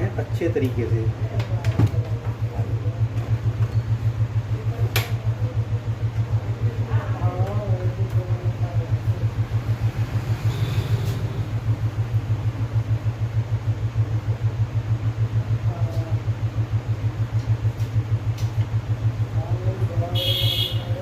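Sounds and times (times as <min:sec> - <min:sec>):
low droning hum throbbing: 0:00.0 - 0:21.0.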